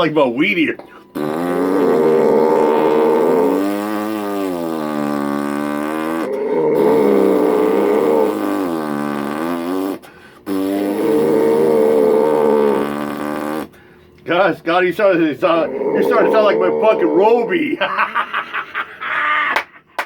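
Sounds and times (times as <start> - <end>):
loud droning snoring: 1.1 - 13.8, 15.1 - 17.9.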